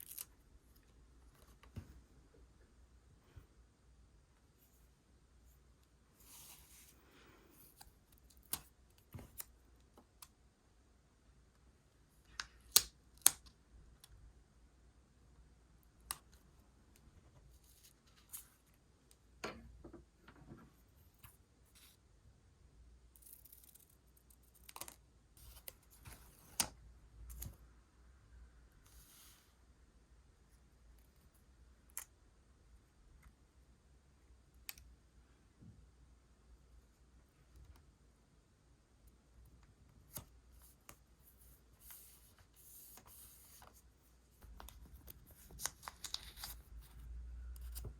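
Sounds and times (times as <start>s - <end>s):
stationery being handled: 40.0s - 47.9s.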